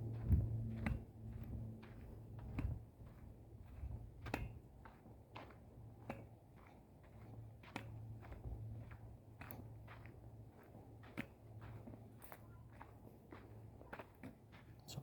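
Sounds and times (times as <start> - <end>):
low steady rumble: 0.0 - 4.4
footsteps on dirt trail: 0.0 - 14.9.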